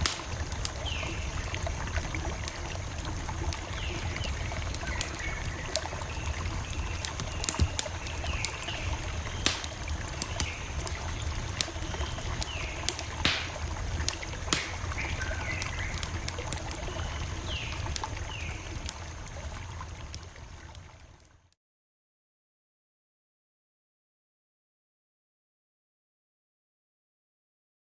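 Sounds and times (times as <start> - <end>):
campfire crackling: 0.0 - 21.6.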